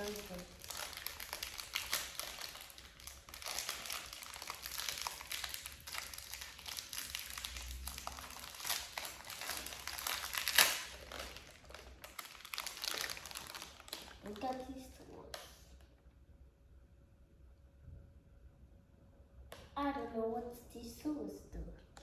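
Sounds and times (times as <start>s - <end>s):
packaging crackle: 0.0s - 15.5s
packaging crinkling and rustling: 0.0s - 15.5s.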